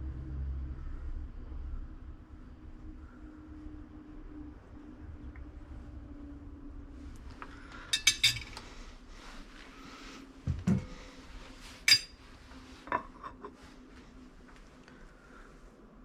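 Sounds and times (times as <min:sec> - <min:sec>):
faint steady hum: 0:00.0 - 0:16.0
cutlery clinking against dishes: 0:08.0 - 0:08.6, 0:11.9 - 0:12.2.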